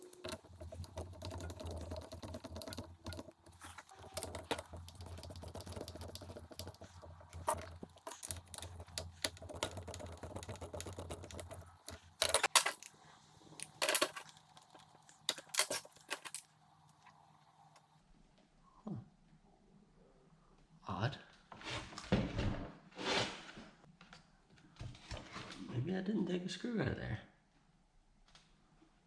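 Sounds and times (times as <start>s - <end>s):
tools clicking and clacking: 0.0s - 12.9s, 13.6s - 16.5s.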